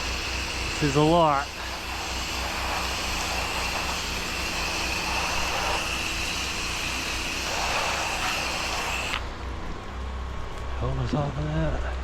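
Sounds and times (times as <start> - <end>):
pressure washer spray hiss: 0.0 - 9.3.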